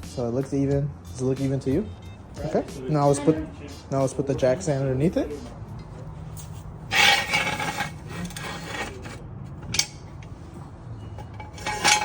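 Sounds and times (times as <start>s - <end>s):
metal jack stand scraping ground: 6.3s - 12.0s.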